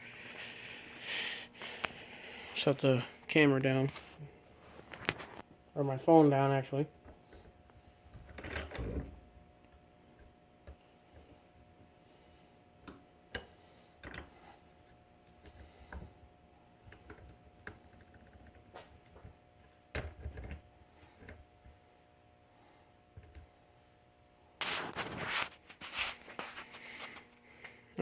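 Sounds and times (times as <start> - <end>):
scraping rustle: 24.6 - 27.4.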